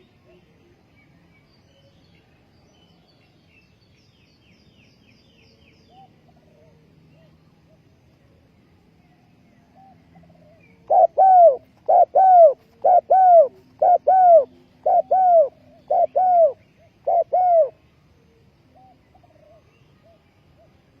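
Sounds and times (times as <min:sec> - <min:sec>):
dove cooing: 0:09.8 - 0:20.8.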